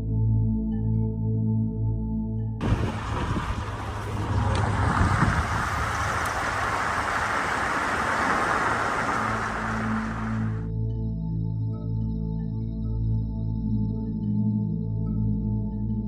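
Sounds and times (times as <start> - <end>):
steady rushing noise: 2.6 - 10.6.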